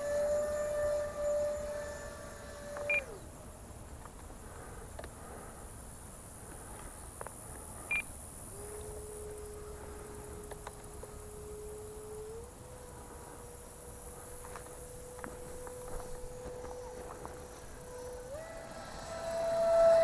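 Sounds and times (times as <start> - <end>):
electric ducted fan whine: 0.0 - 20.0
insect buzzing: 7.8 - 20.0.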